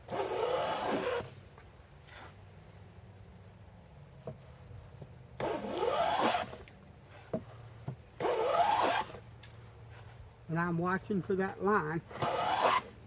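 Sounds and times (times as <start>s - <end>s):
hand plane rasping on wood: 12.1s - 12.9s.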